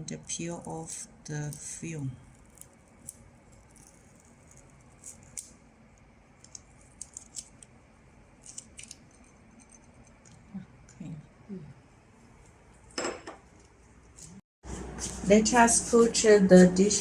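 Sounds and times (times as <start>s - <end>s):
plastic film crinkling: 0.9s - 5.5s.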